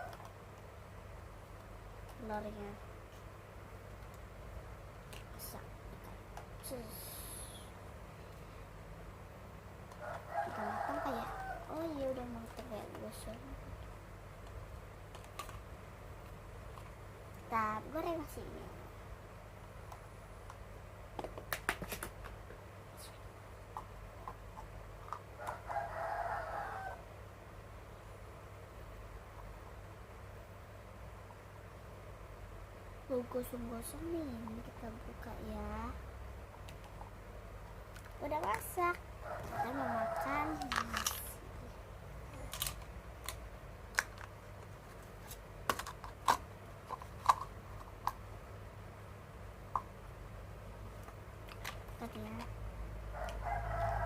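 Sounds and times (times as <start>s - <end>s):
rooster crowing: 10.0s - 11.8s, 25.4s - 27.1s, 39.2s - 41.3s, 53.1s - 54.0s.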